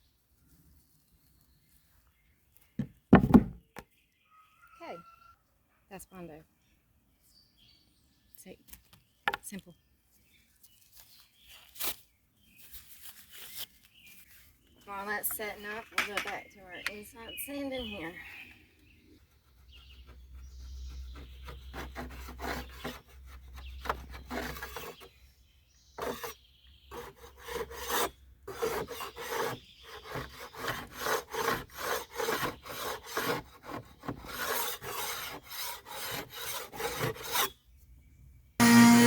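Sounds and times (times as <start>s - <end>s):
sandpaper rubbing on boat hull: 19.3s - 25.1s, 26.0s - 37.5s.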